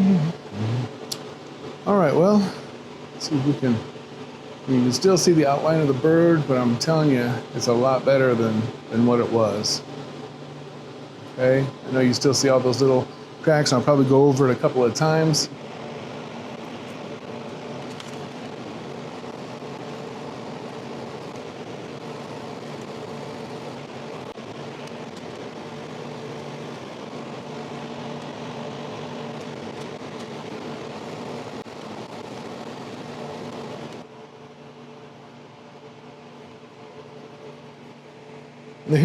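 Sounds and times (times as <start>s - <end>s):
motor humming: 11.1s - 35.8s.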